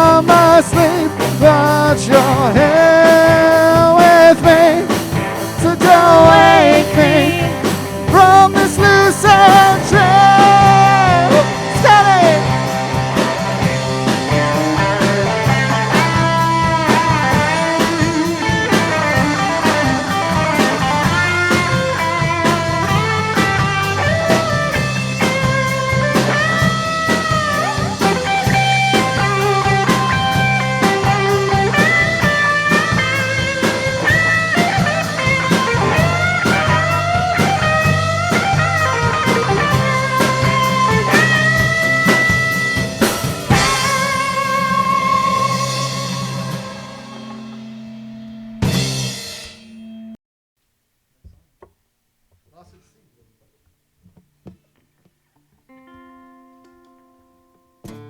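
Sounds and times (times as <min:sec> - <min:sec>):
bass guitar: 0:00.0 - 0:50.2
drum kit: 0:00.0 - 0:50.2
lead guitar with bending notes: 0:00.0 - 0:50.2, 0:55.6 - 0:58.0.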